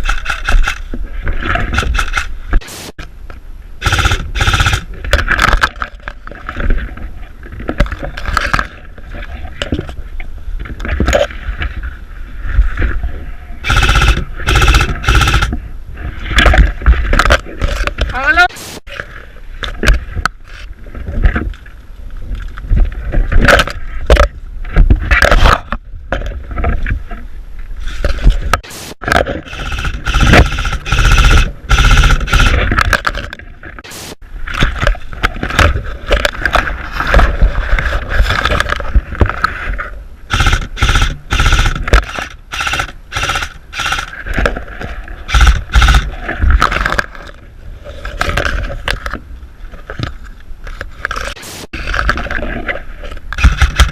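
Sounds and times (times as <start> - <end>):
microphone scraping and rustling: 22.3 - 29.4, 32.8 - 40.0.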